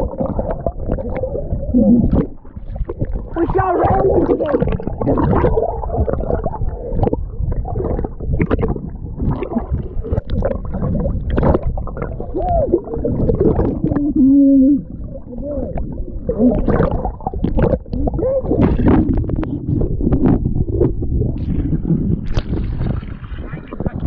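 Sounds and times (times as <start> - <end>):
water sloshing and gurgling: 0.0 - 24.0
muffled voice-like sounds: 23.4 - 24.0.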